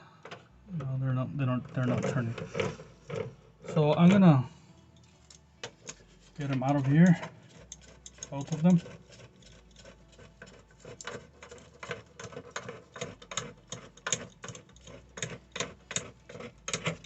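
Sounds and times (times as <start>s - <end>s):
hose couplings clicking and tapping: 5.0s - 17.0s.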